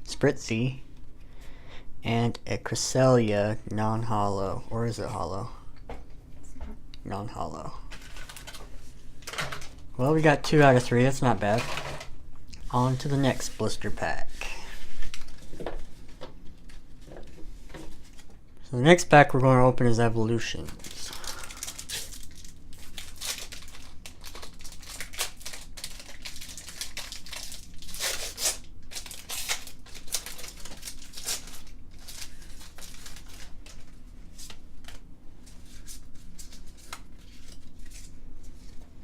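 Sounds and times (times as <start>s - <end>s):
packaging being torn and crinkled: 20.6s - 35.1s, 35.7s - 38.2s.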